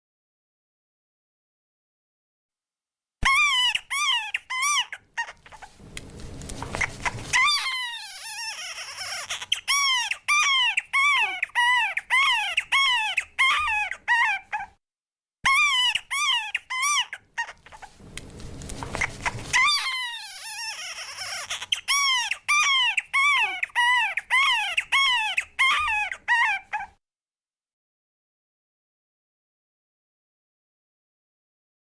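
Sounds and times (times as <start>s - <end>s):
newborn baby crying: 3.2s - 5.8s, 6.8s - 14.8s, 15.4s - 18.0s, 18.9s - 27.0s.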